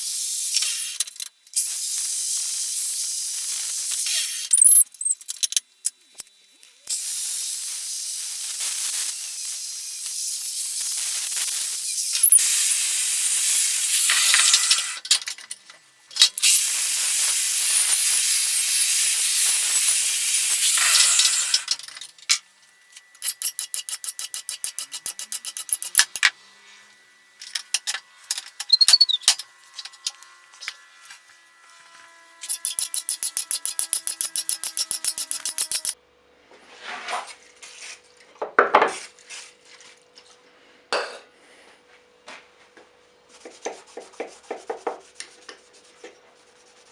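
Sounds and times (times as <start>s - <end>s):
loud steady hissing: 6.4s - 14.8s.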